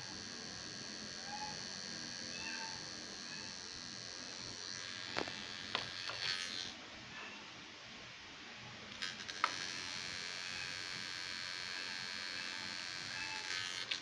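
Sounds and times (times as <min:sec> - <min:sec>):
hard drive whine and buzz: 0:00.0 - 0:14.0
hard drive sharp clicks: 0:05.0 - 0:06.4.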